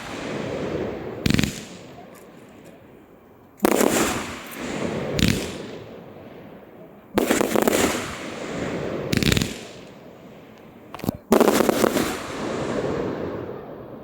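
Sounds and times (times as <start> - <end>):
firework shell bursts: 1.2 - 2.8, 3.6 - 5.9, 7.2 - 10.0.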